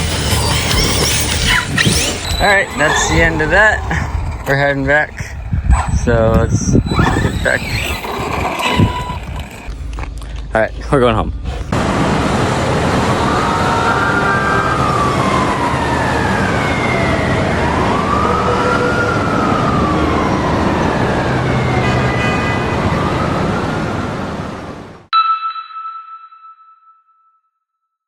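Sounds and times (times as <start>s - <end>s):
siren wailing: 0.0s - 9.7s, 11.8s - 25.0s
road noise: 0.0s - 25.1s
ringing chime: 25.1s - 27.5s.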